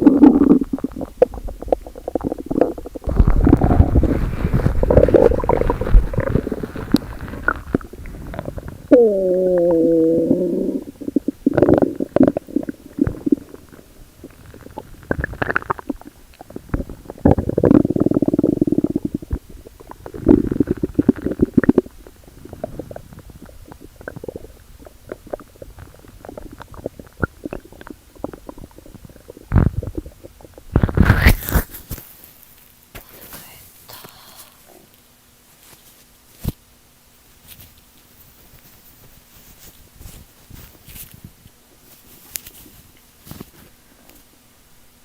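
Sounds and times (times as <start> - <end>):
stomach growling and gurgling: 0.0 - 32.0.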